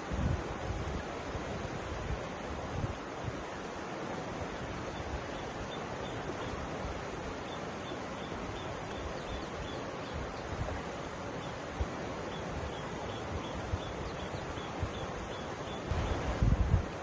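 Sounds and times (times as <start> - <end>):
river water rushing: 0.0 - 17.0.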